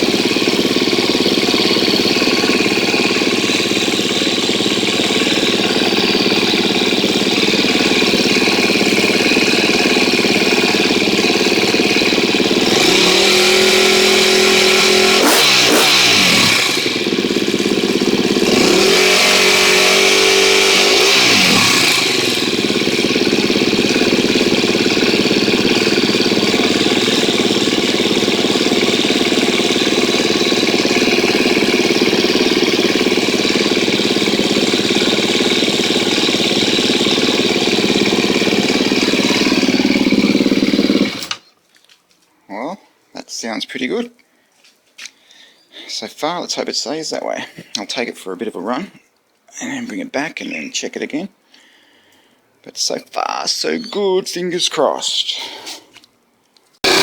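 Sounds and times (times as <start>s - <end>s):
motorcycle engine idling and revving: 0.0s - 41.5s, 56.8s - 57.0s.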